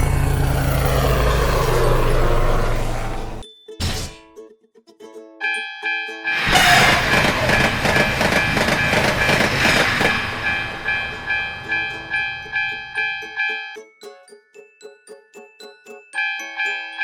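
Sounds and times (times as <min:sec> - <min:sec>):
train rumbling past: 0:00.0 - 0:03.4, 0:06.3 - 0:13.5
crossing warning bell ringing: 0:05.4 - 0:13.8, 0:16.2 - 0:17.0.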